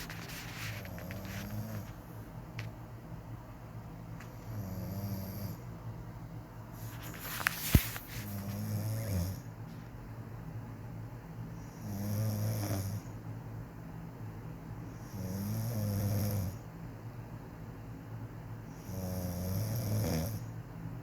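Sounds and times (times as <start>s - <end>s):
woman snoring quietly: 4.4s - 5.7s, 8.3s - 9.5s, 11.6s - 13.2s, 14.9s - 16.6s, 18.7s - 20.6s.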